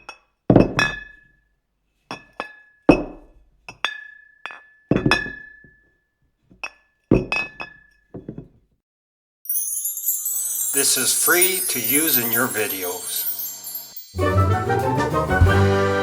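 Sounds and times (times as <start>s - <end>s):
glass bottles clinking: 9.5s - 14.4s.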